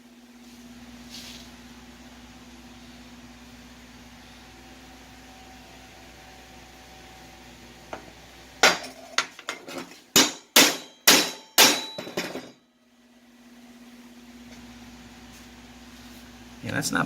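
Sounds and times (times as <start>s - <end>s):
hammer ringing on steel: 10.2s - 12.6s.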